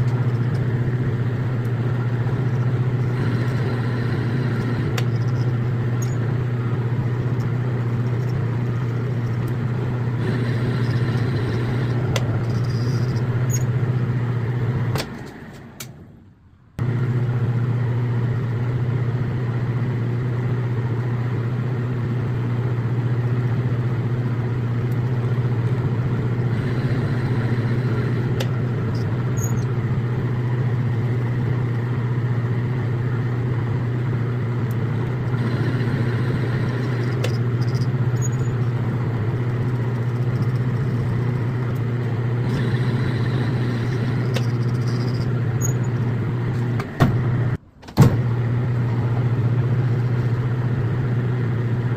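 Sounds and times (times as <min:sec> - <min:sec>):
metal lathe motor hum: 0:00.0 - 0:15.8, 0:24.0 - 0:47.6.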